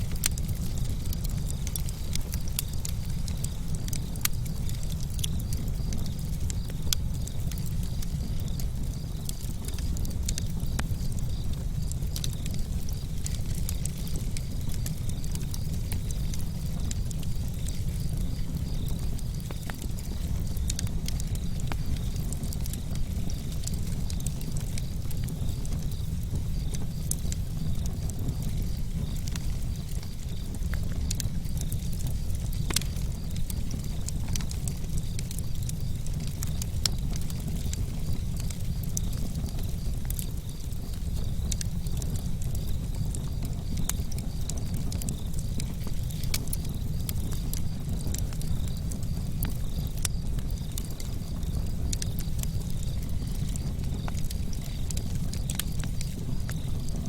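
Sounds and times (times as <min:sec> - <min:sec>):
campfire crackling and popping: 0:00.0 - 0:57.0
low fire rumble: 0:00.0 - 0:57.0.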